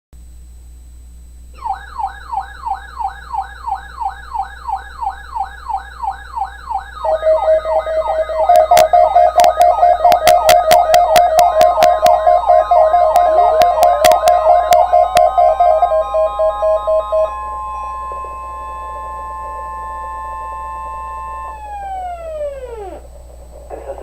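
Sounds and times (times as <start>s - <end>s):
electronic siren sweeping upward: 1.6s - 23.3s
steady alarm tone: 1.6s - 24.0s
sharp clicks: 7.5s - 16.0s.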